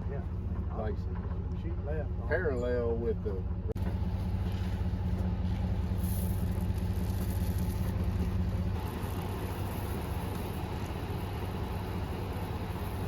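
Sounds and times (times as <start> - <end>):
engine idling: 0.0 - 13.0.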